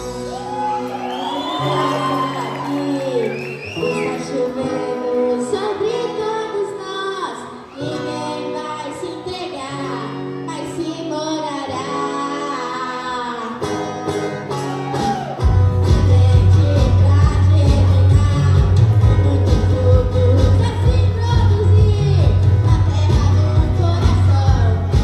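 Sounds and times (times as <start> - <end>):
heavy bass: 0.0 - 2.2, 15.1 - 25.0
woman singing slow melody: 1.2 - 14.7, 15.8 - 25.0.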